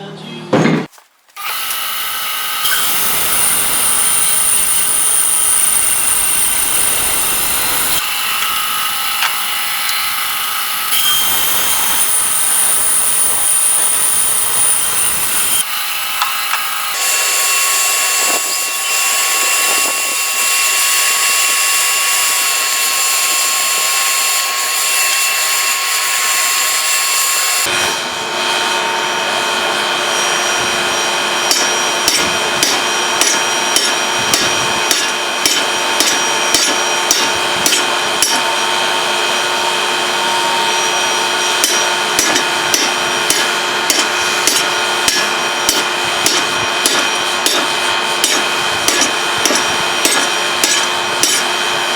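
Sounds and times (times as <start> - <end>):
whirring machine: 1.4 - 51.9
hammer ringing on anvil: 31.5 - 38.4, 41.6 - 51.5.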